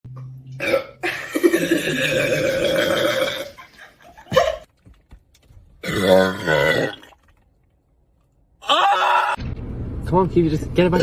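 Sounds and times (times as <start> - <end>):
person straining vocally: 5.8 - 7.2, 8.6 - 9.4.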